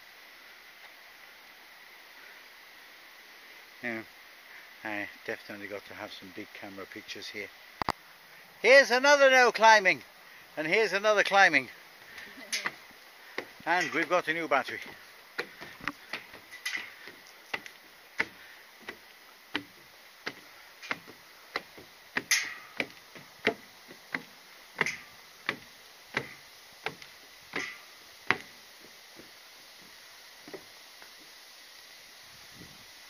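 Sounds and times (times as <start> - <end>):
footsteps on hard path: 12.0 - 31.3.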